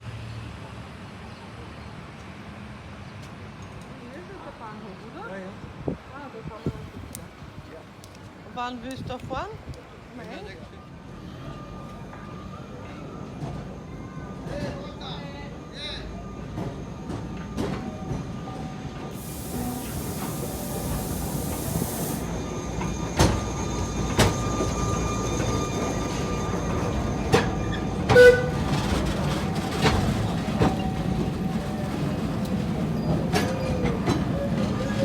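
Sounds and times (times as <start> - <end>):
train rolling along track: 0.1 - 35.0
wheel squeals: 19.2 - 35.0.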